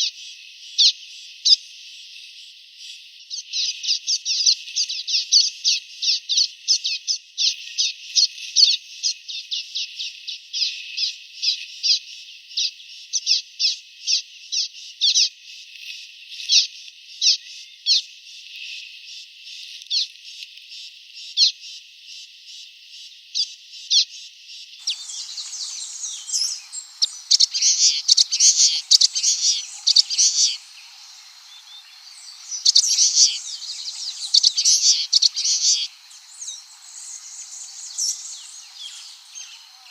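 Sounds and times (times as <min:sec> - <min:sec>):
bird chirping: 0:24.8 - 0:39.9.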